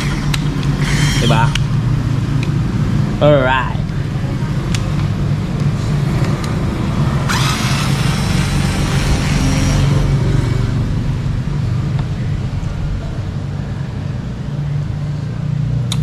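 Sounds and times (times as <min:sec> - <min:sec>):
electric screwdriver whirring: 0:00.0 - 0:01.6, 0:07.3 - 0:09.8
low background hum: 0:00.0 - 0:16.0.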